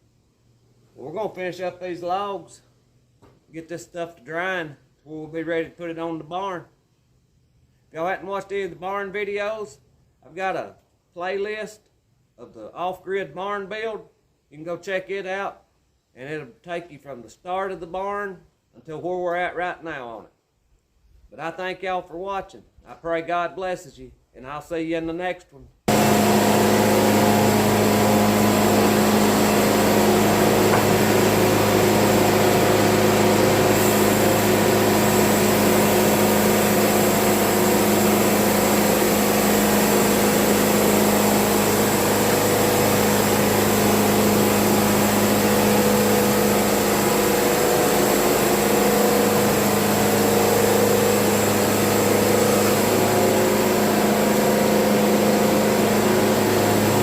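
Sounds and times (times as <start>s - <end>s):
sawmill machine hum: 25.9s - 57.0s.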